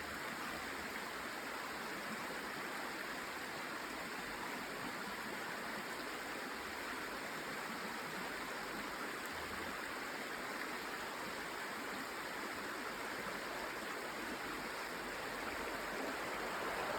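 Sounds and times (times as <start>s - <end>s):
running water: 9.2s - 16.9s.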